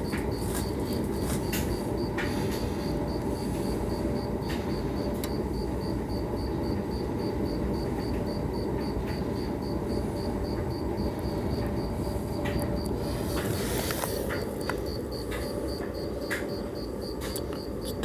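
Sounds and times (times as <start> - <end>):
dryer vent air rushing: 0.0 - 18.0.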